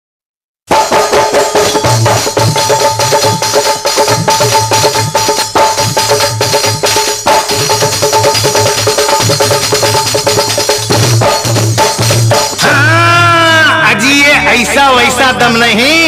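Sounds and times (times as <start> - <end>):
tambourine: 0.7 - 12.6
drums beating: 0.7 - 16.0.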